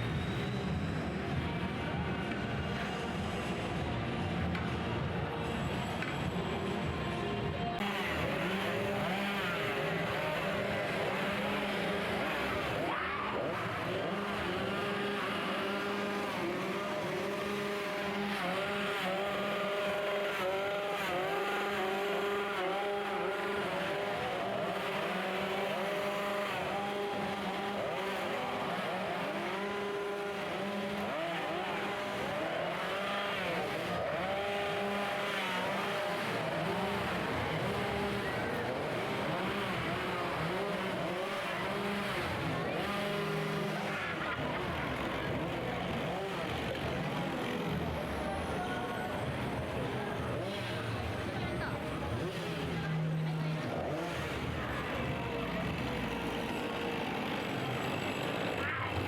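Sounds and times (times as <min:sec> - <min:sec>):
chainsaws idling and revving: 0:07.8 - 0:59.0.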